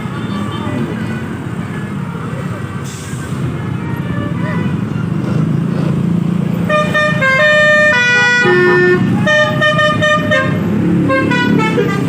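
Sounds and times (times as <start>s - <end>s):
bus engine running: 0.0s - 12.0s
multi-tone bus air horns playing tune: 6.6s - 12.0s.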